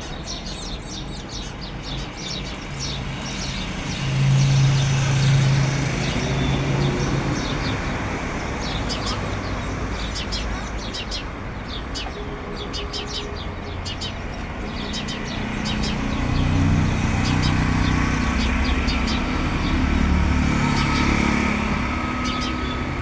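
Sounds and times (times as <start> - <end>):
small birds chirping: 0.0 - 23.0
vehicle passing with low rumble: 14.6 - 23.0.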